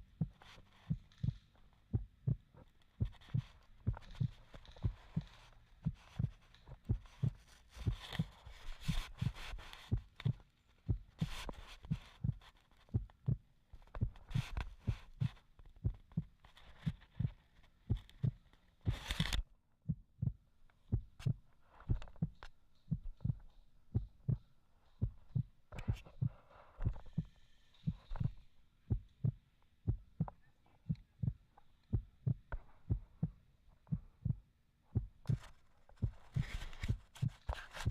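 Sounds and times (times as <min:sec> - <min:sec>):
low dull thumps: 0:00.0 - 0:08.3, 0:19.9 - 0:27.3, 0:27.9 - 0:37.9.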